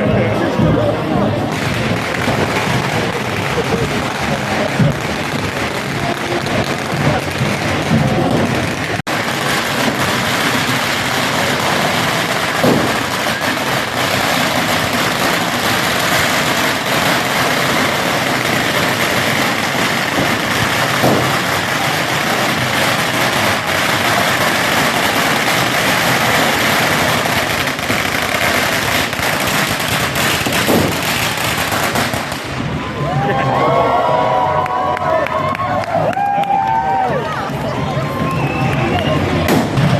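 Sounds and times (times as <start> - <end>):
fireworks hissing and crackling: 0.0 - 39.9
falling firework whistles: 38.1 - 39.9.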